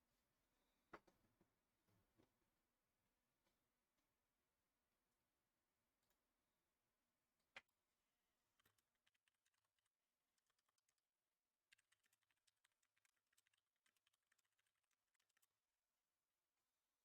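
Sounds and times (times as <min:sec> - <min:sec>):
faint irregular clicks: 0:08.4 - 0:15.7.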